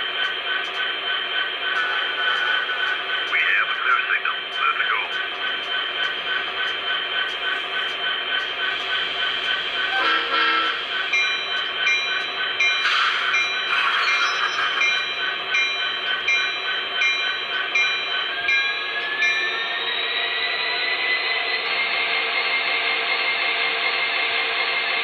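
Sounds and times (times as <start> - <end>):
diesel engine sound: 0.0 - 22.3
locomotive bell ringing: 1.7 - 20.6.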